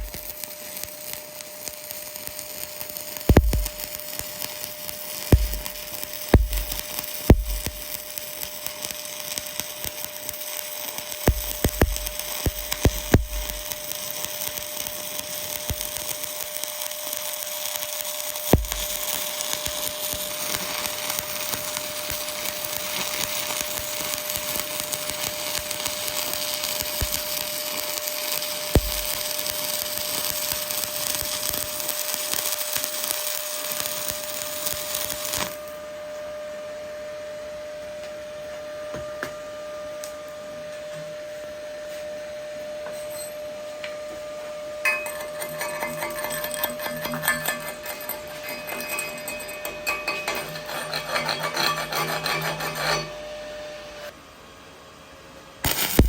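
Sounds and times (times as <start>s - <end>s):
welding arc crackling: 0.0s - 35.8s, 44.8s - 54.1s, 55.6s - 56.0s
welding arc pops: 0.0s - 35.8s, 55.6s - 56.0s.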